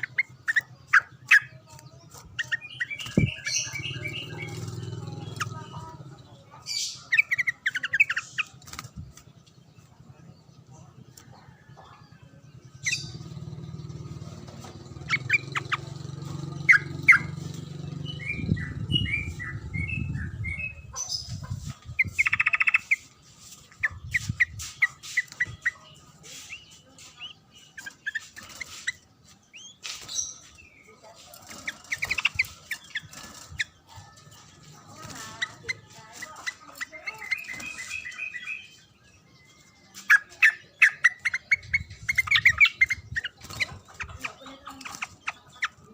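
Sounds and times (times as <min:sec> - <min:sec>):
songbird chirping and trilling: 0:00.0 - 0:45.9.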